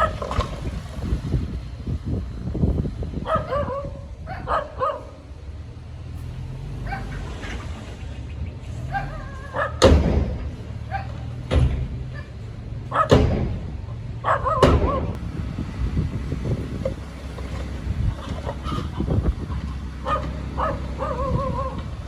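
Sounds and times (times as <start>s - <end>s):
diesel engine low hum: 0.0s - 22.0s
loud thud: 9.8s - 10.6s, 13.1s - 13.9s, 14.6s - 15.2s.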